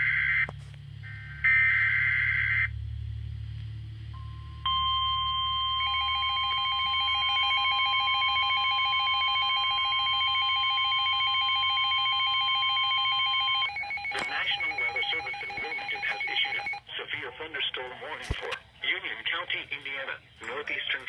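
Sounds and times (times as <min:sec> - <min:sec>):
steady alarm tone: 0:00.0 - 0:03.4, 0:04.1 - 0:16.9
rapidly pulsing beep: 0:04.2 - 0:17.1
person speaking: 0:14.1 - 0:21.0.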